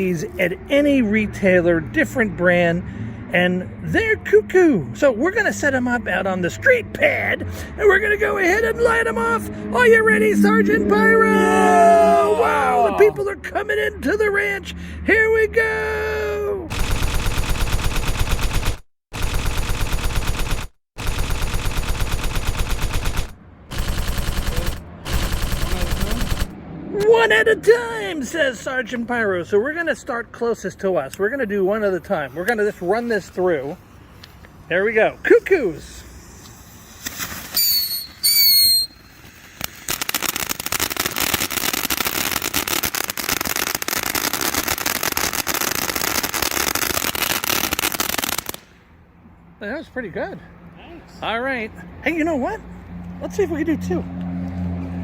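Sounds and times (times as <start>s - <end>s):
firework crackling spray: 32.2s - 48.7s
firework falling whistles: 36.0s - 42.2s.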